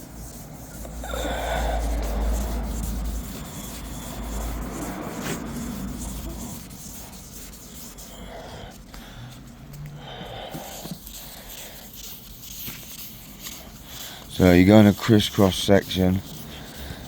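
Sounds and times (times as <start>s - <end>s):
wet sandpaper rubbing paint: 0.0s - 8.8s, 10.3s - 17.0s
low rumble: 0.6s - 7.1s.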